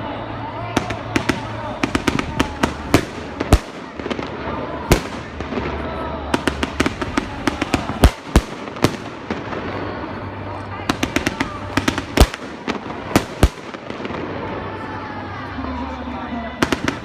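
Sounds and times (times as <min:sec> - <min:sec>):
fireworks bangs and crackles: 0:00.3 - 0:17.0
loud firework booms: 0:00.8 - 0:10.0.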